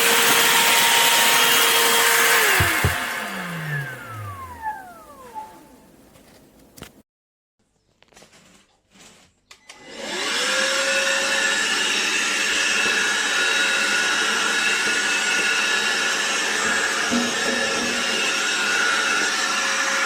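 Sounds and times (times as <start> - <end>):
vacuum cleaner motor whining: 0.0 - 6.6, 9.7 - 20.0.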